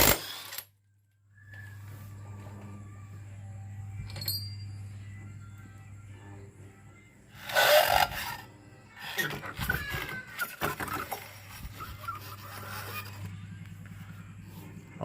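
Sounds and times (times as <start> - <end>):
low hum: 0.8 - 9.0, 11.1 - 15.0
metal parts and tools clattering: 4.0 - 4.7.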